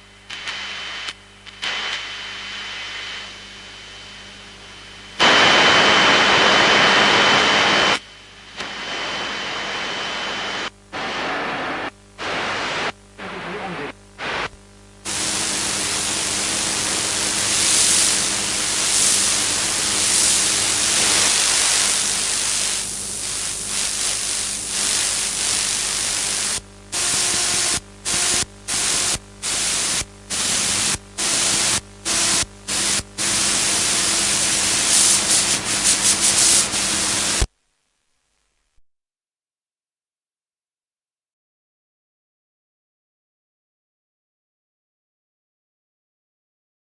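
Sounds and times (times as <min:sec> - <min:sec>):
radio static hiss: 0:00.0 - 0:37.5.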